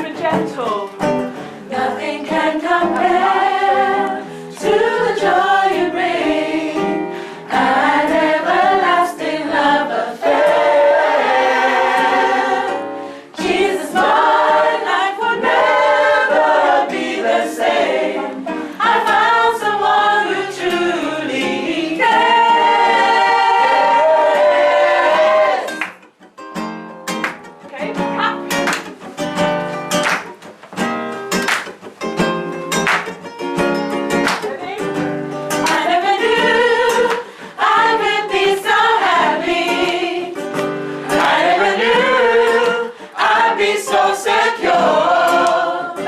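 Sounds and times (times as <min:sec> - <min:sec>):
gospel choir singing: 0:01.4 - 0:25.9, 0:35.6 - 0:46.0.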